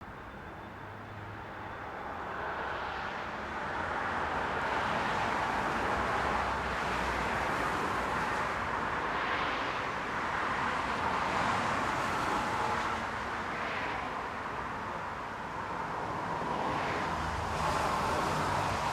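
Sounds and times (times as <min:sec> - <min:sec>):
cars driving past: 0:15.5 - 0:18.9.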